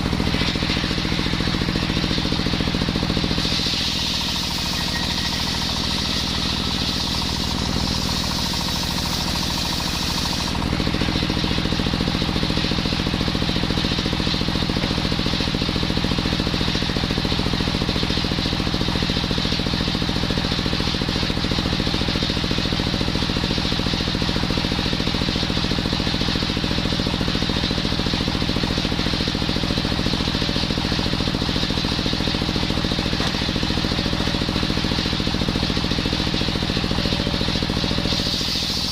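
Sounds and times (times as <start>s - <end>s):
saw engine running: 0.0s - 38.9s
saw blade hissing through wood: 3.3s - 6.0s, 37.4s - 38.9s.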